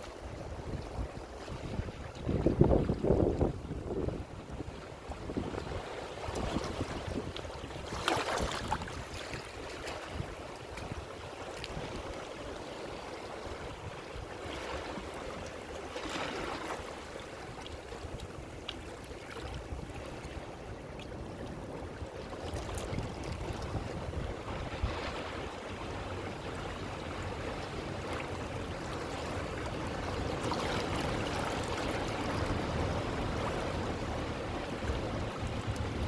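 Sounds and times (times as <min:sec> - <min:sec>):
waves breaking: 0:00.0 - 0:36.0.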